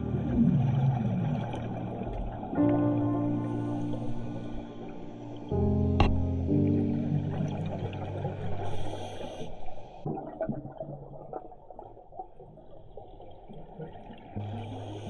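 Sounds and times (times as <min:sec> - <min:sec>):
background music: 0:00.0 - 0:09.4
exhaled bubbles gurgling: 0:00.0 - 0:15.0.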